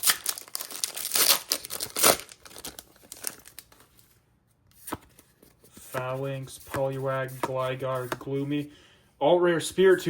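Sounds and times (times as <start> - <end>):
foil pack ripping: 0.0 - 3.7
wrapper crinkling: 0.0 - 4.0.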